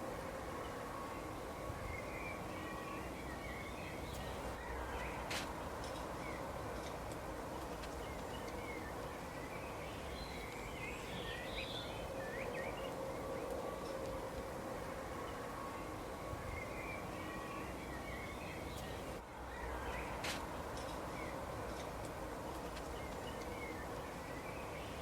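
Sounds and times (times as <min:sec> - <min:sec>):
faint steady hum: 0:00.0 - 0:25.0
outdoor background hiss: 0:00.0 - 0:25.0
small birds chirping: 0:00.6 - 0:14.2, 0:15.1 - 0:25.0.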